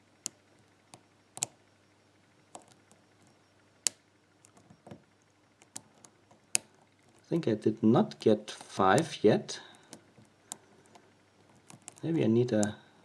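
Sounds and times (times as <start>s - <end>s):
lock pick ticking on pins: 8.0s - 12.8s.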